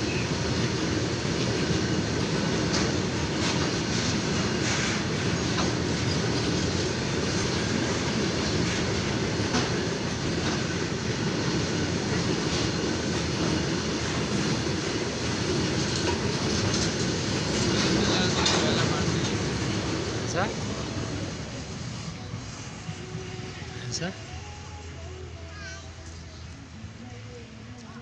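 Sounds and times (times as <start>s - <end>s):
freight train wagons rumbling: 0.0s - 24.6s
wheels clicking over rail joints: 0.5s - 20.2s.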